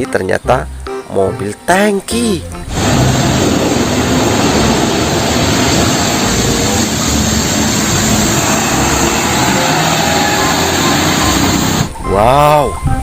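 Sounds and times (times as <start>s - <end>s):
dense rushing noise: 2.7s - 12.0s
heavy vehicle engine running: 2.7s - 12.0s.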